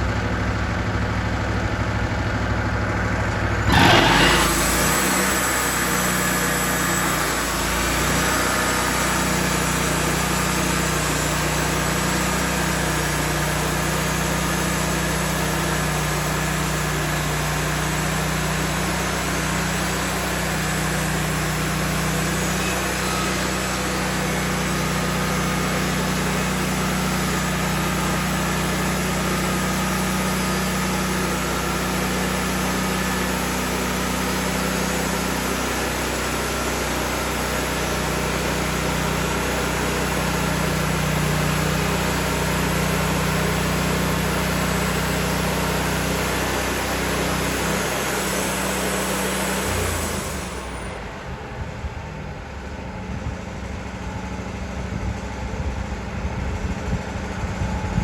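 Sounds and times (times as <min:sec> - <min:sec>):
band saw cutting log: 0:03.6 - 0:08.1
sawmill engine revving: 0:03.6 - 0:51.2.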